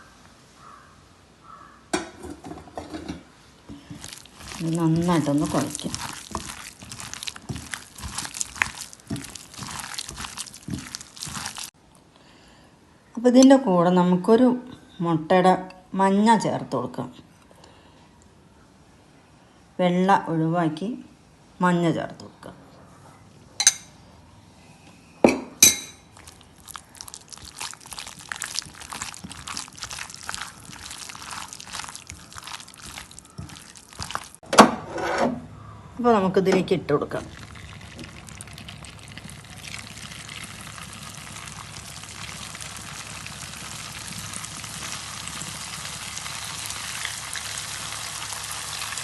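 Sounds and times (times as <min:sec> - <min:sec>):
hand mixing thick batter: 0:03.7 - 0:11.8, 0:26.1 - 0:34.4, 0:37.0 - 0:49.0
small clicks and drips: 0:37.2 - 0:49.0.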